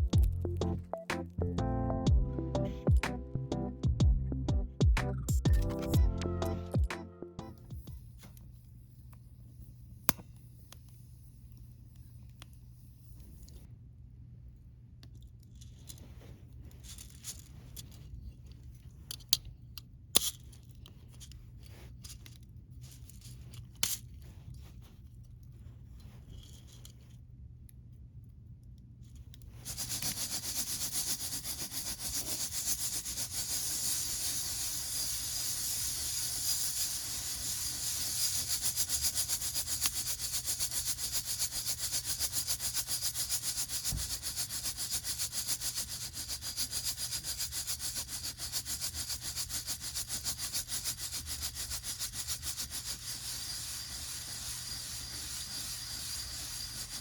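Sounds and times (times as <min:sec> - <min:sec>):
coffee beans rattling in basket: 0:29.6 - 0:57.0.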